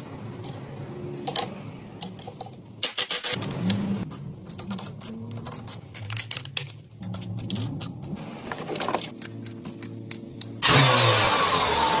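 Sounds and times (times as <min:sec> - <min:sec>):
metallic clicking and rattling: 0:01.3 - 0:08.2.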